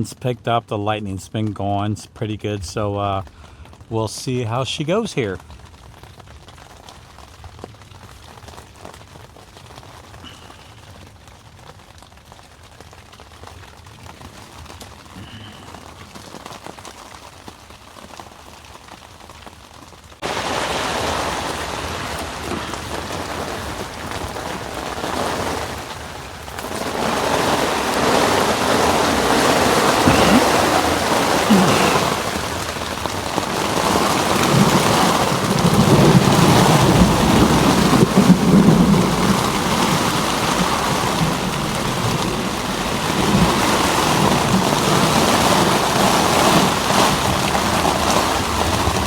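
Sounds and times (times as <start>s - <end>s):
heavy rain on tent fabric: 0.0s - 49.0s.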